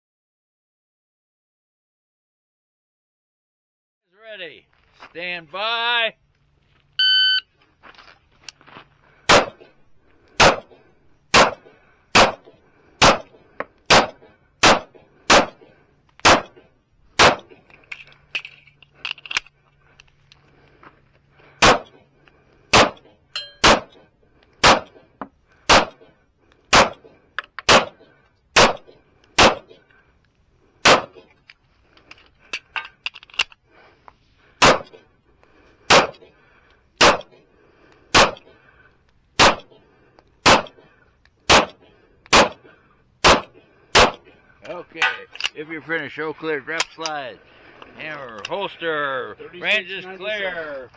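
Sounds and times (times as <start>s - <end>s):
pistol shots: 9.3s - 9.7s, 10.4s - 16.6s, 17.2s - 17.6s, 21.6s - 22.0s, 22.7s - 23.0s, 23.6s - 23.9s, 24.6s - 25.0s, 25.7s - 26.0s, 26.7s - 28.0s, 28.6s - 29.8s, 30.8s - 31.2s, 34.6s - 35.0s, 35.9s - 36.2s, 37.0s - 37.4s, 38.1s - 38.4s, 39.4s - 39.7s, 40.4s - 40.8s, 41.5s - 42.6s, 43.2s - 44.2s
metallic clangs: 23.3s - 24.0s, 45.0s - 45.6s.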